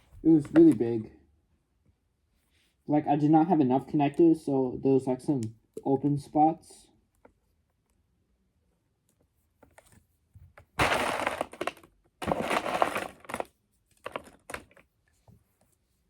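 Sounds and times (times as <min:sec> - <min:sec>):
plastic toy pieces clattering: 0:10.8 - 0:14.8.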